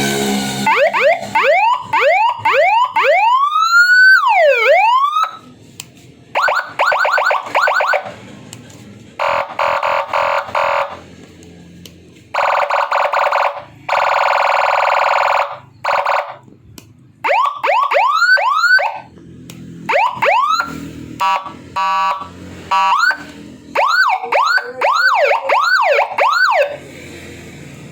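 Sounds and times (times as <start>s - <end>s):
electronic vehicle siren: 0.5s - 5.5s, 6.3s - 8.2s, 9.2s - 11.1s, 12.3s - 16.5s, 17.2s - 19.1s, 19.9s - 26.8s.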